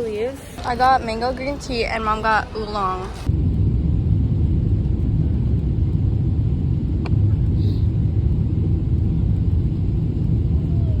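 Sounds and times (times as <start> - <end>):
vehicle rumble from inside: 3.2 - 11.0.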